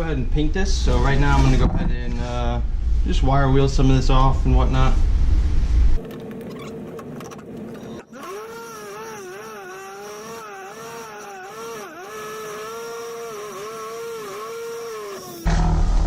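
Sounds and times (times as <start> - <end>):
wire wheel grinding metal: 7.4 - 15.5.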